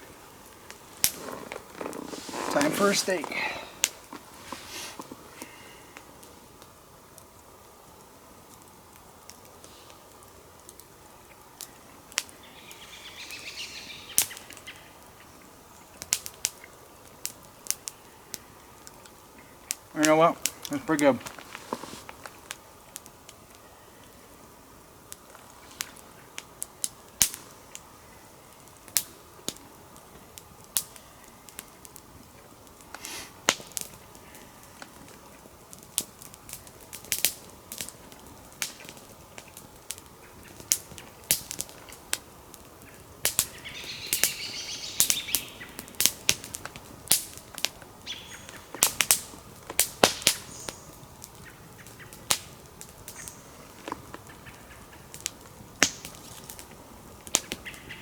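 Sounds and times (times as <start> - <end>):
campfire crackling: 0.0 - 58.0
sharp pops of burning wood: 0.0 - 58.0.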